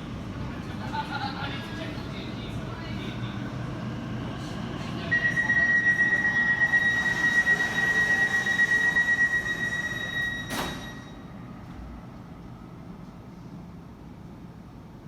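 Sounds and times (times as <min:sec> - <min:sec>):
train running noise: 0:00.0 - 0:13.3
train wheels squealing on rails: 0:04.4 - 0:11.4.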